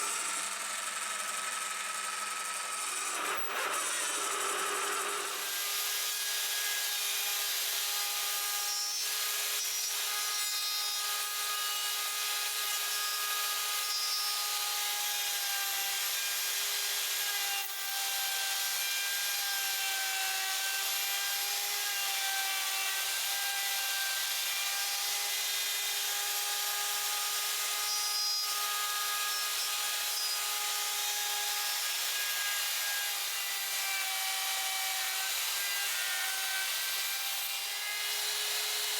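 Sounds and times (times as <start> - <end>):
power tool motor whine: 0.0 - 6.8.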